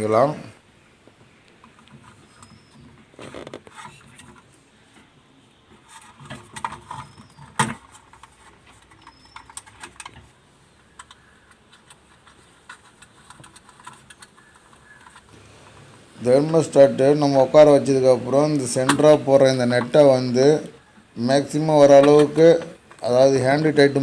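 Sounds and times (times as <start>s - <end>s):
small metal parts clicking: 6.5s - 10.2s, 10.9s - 15.3s.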